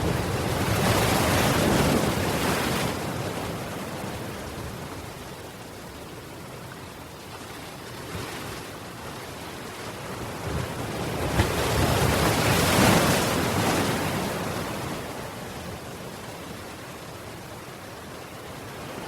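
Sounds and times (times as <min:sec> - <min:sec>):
wave breaking on shore: 0:00.0 - 0:04.6, 0:10.2 - 0:16.0
background surf: 0:00.0 - 0:19.0.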